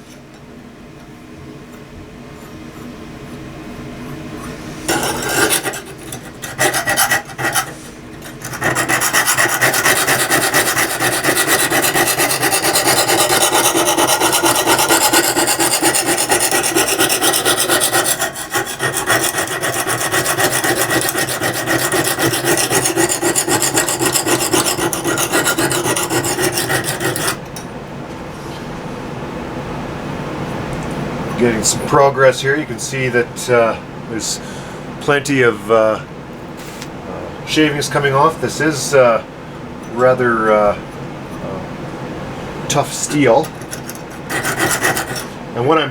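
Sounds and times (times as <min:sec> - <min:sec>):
sharpening hone scraping steel: 0:04.9 - 0:27.4, 0:43.1 - 0:45.3.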